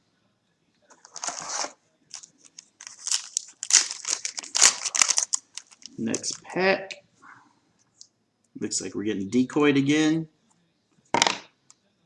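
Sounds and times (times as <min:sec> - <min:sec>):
foil wrapper crinkling and tearing: 0:01.1 - 0:06.5.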